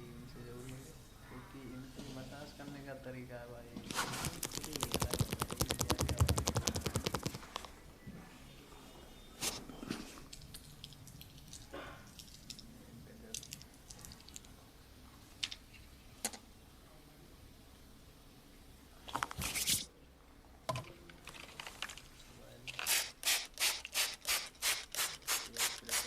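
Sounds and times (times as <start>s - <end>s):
massage cracks and slaps: 4.0s - 7.8s.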